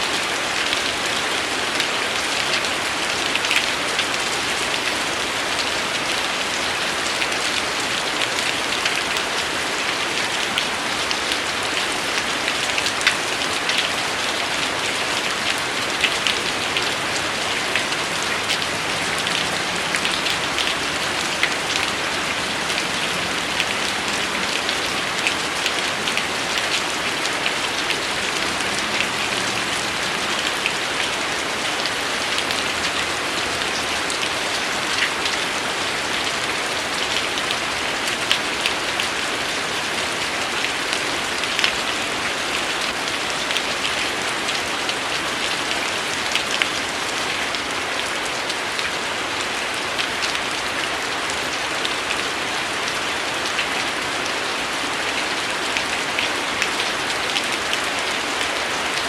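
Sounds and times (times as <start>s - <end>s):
rain falling: 0.0s - 59.0s
raindrops ticking: 6.9s - 14.5s, 15.2s - 31.1s.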